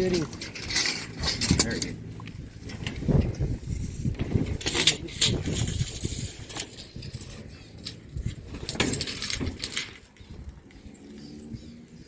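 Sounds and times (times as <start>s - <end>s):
metallic clicks and rattles: 4.5s - 11.5s.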